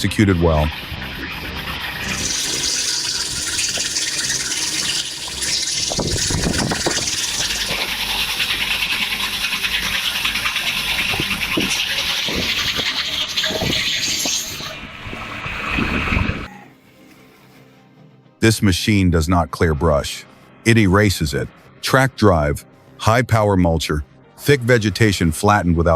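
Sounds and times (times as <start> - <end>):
chainsaw chain hissing through wood: 2.0 - 11.1, 11.7 - 14.7.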